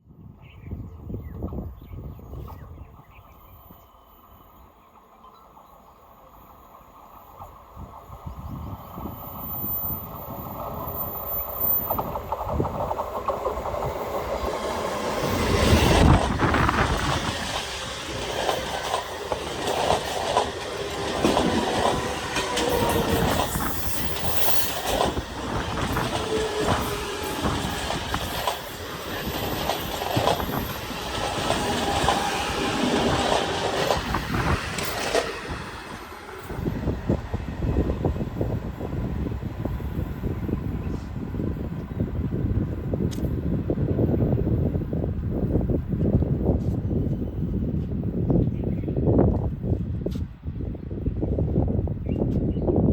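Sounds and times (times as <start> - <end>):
train wheels clattering: 11.8 - 36.6.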